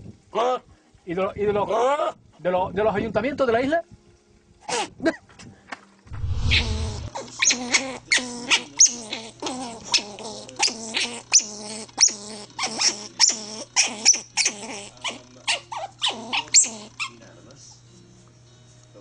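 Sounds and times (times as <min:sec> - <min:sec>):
animal yelping calls: 0:07.0 - 0:17.2.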